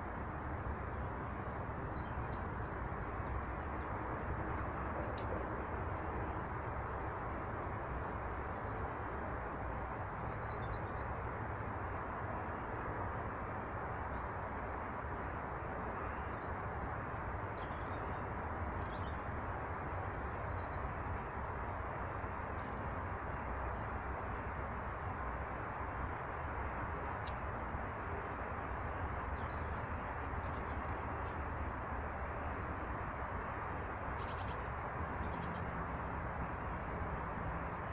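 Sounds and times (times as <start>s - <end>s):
small birds chirping: 18.7s - 19.2s, 22.6s - 23.6s, 29.2s - 32.3s, 34.2s - 35.7s.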